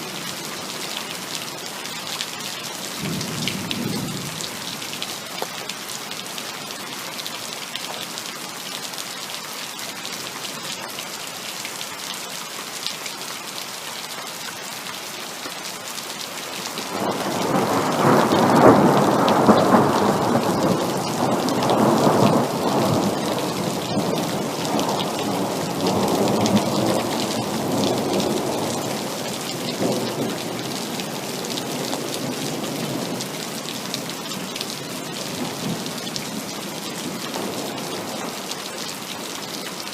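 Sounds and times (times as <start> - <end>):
heavy rain falling: 0.0 - 39.9
rolling thunder rumble: 16.9 - 29.0.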